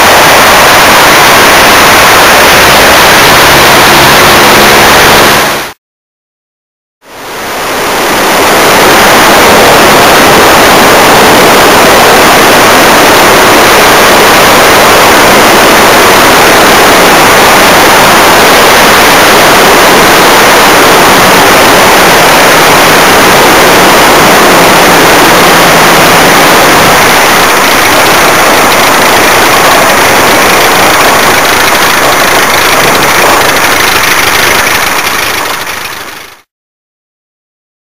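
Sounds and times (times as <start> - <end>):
heavy rush of air: 0.0 - 5.8, 7.1 - 35.6
light aircraft engine and propeller: 7.1 - 36.4.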